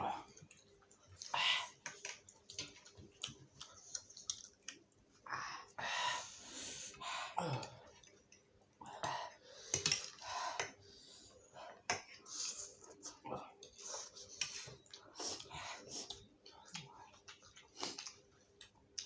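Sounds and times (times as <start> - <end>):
wet chewing: 0.3 - 5.2, 12.0 - 19.0.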